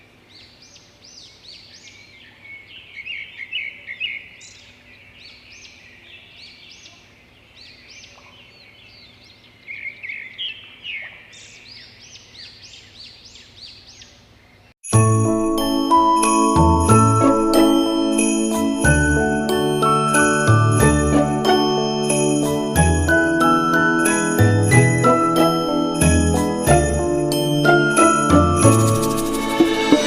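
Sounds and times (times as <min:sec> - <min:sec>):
birds chirping and singing: 0:00.3 - 0:14.7.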